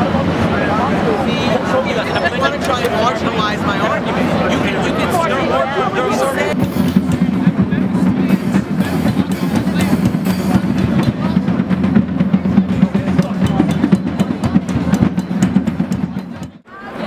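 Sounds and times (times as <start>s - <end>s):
fast drums and percussion: 0.0s - 16.7s.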